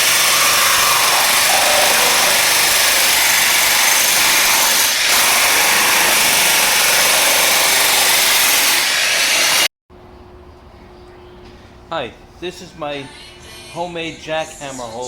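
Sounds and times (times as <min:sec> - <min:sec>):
electric jackhammer breaking tile: 0:00.0 - 0:09.7.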